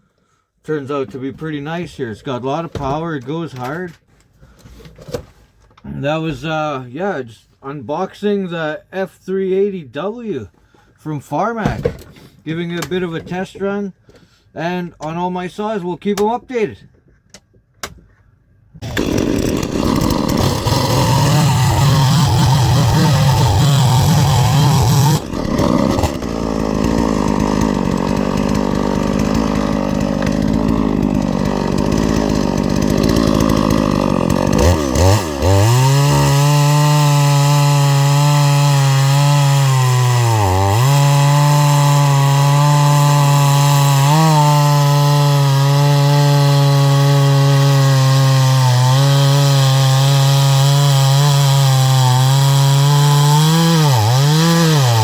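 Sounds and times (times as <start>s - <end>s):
chainsaw running: 18.8s - 55.0s.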